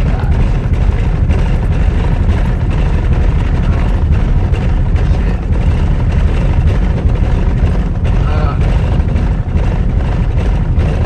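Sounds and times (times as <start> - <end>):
flat tyre booming: 0.0 - 11.0
low road rumble: 0.0 - 11.0.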